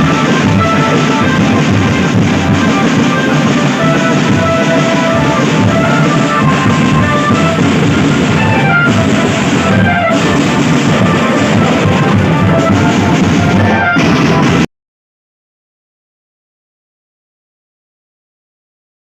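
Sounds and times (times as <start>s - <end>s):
rock music with drums and guitar: 0.0s - 14.6s.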